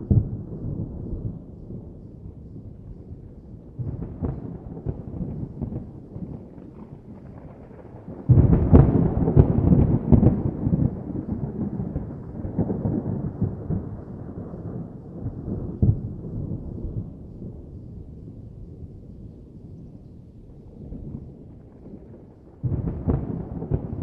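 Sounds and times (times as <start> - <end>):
thunder crack and rumble: 0.0 - 24.0
thunder boom: 7.0 - 14.5, 21.0 - 24.0.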